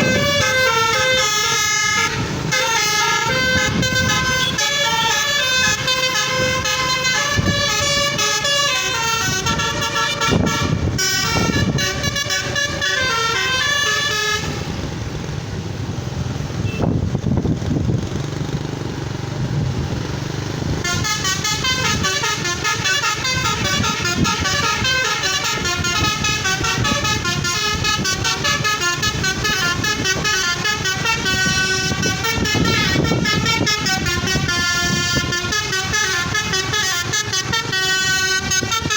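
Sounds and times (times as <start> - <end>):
multi-tone musical horn: 0.0 - 14.9, 20.8 - 38.9.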